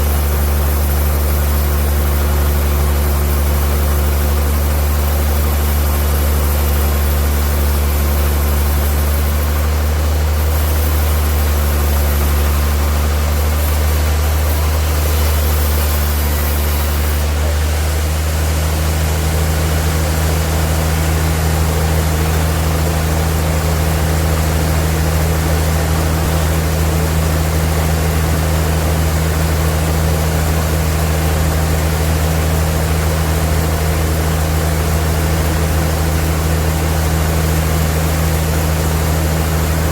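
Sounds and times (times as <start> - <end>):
high hiss: 0.0 - 29.7
sawmill machinery humming: 0.0 - 39.9.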